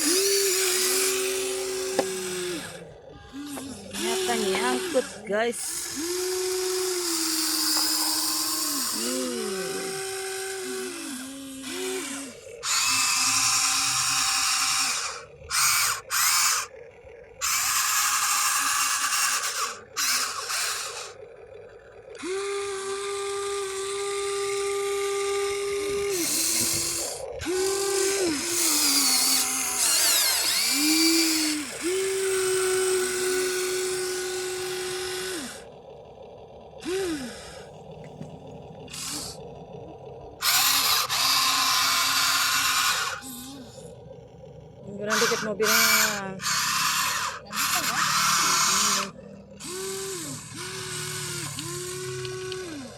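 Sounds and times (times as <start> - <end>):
electric motors whining: 0.0 - 52.9
rasping grinding noise: 0.0 - 52.9.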